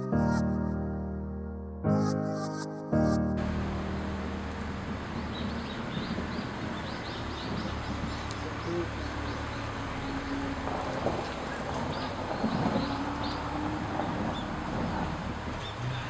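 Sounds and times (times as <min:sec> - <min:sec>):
small birds chirping: 0:03.4 - 0:16.0.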